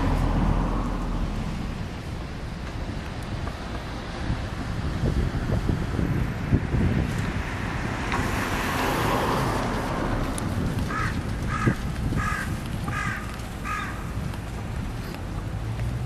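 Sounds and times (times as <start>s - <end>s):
city traffic noise: 0.0s - 16.0s
crow cawing: 10.9s - 14.1s.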